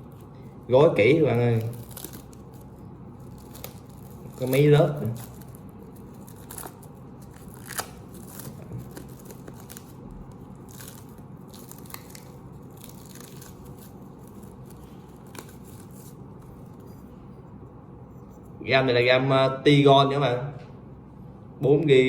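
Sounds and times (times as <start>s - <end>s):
packing wrap tearing and crinkling: 0.0s - 16.9s.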